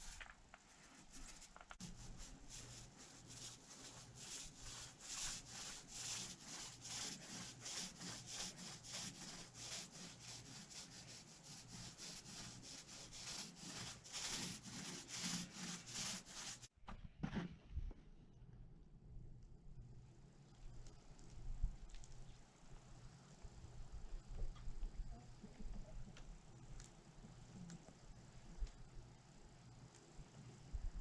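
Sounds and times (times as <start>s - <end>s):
hand rubbing strokes on hull: 0.0s - 16.7s.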